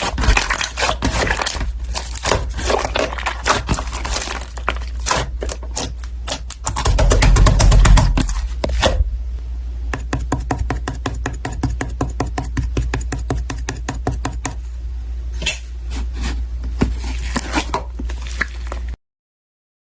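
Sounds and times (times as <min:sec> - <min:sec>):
slime crackling and popping: 0:00.0 - 0:07.2.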